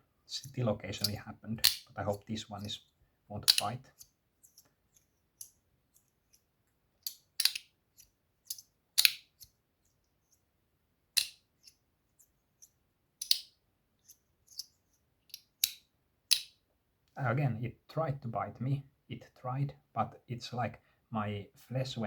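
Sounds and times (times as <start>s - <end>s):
metal slider clicking: 3.5s - 3.7s, 7.1s - 7.7s, 8.5s - 9.2s.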